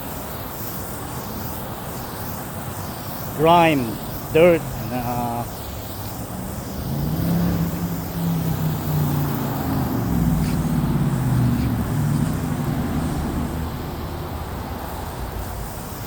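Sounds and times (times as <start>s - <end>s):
engine running: 3.6s - 15.4s.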